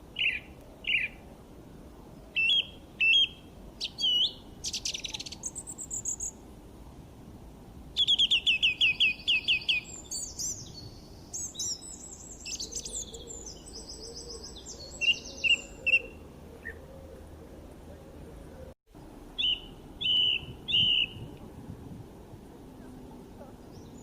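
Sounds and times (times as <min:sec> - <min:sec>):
birds singing: 0:00.2 - 0:01.2, 0:02.3 - 0:06.4, 0:08.0 - 0:17.6, 0:18.5 - 0:21.3, 0:23.2 - 0:24.0.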